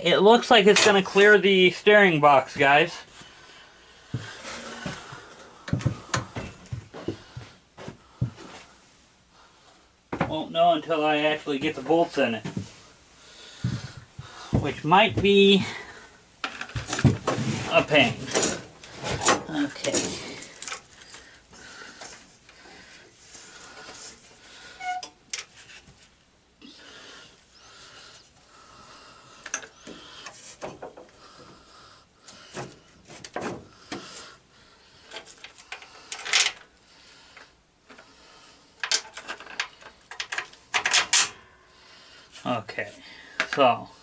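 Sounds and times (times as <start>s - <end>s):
metal parts and tools handled: 18.0s - 21.1s, 35.1s - 36.7s, 38.8s - 41.4s.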